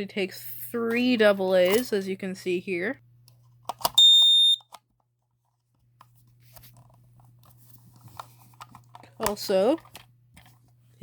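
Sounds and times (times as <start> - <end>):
high-pitched alarm beep: 4.0 - 4.6
faint clicks and handling noises: 4.6 - 10.8.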